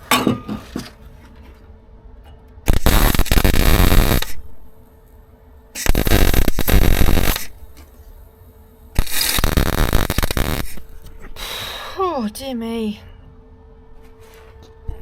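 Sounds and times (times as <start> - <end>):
faint steady hum: 0.0 - 15.0
electric welding arc crackling: 2.7 - 4.7, 5.8 - 7.8, 9.0 - 11.0.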